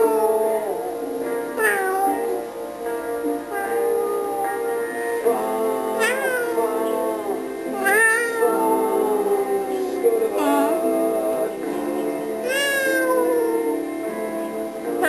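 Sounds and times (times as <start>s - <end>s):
background hold music: 0.0s - 15.0s
person imitating cat meows: 1.6s - 2.4s, 3.5s - 4.6s, 6.0s - 6.8s, 7.7s - 9.8s, 12.4s - 13.8s.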